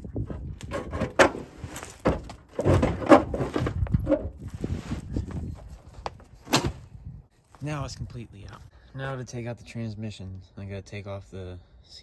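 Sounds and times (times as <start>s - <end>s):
metal clunks and scrapes: 0.0s - 6.8s.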